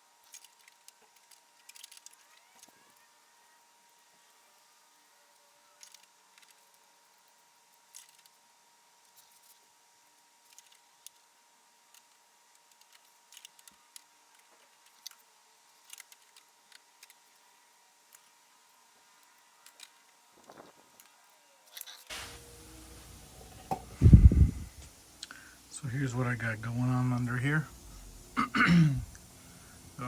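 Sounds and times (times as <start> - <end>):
faint small clicks and ticks: 0.2 - 3.1, 5.8 - 8.4, 9.0 - 22.1.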